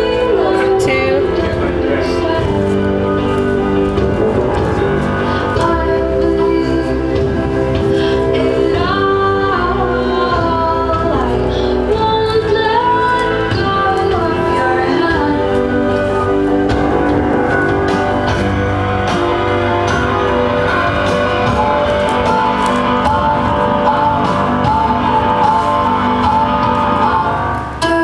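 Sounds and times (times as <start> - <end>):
guitar: 0.0 - 28.0
person singing: 0.0 - 28.0
steady beat: 12.0 - 27.9.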